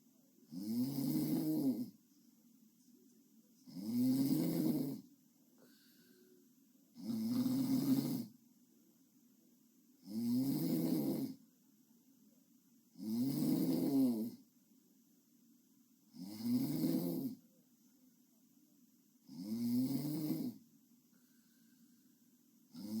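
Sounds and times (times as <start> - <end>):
woman snoring: 0.5 - 1.9, 3.6 - 5.0, 7.0 - 8.3, 10.0 - 11.4, 13.0 - 14.4, 16.1 - 17.4, 19.3 - 20.6, 22.7 - 23.0.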